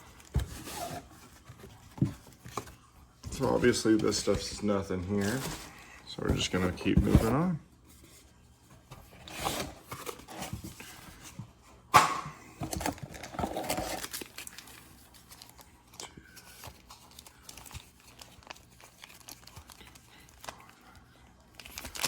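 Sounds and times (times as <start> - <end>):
cardboard box rustling: 0.0 - 11.4, 12.6 - 15.6.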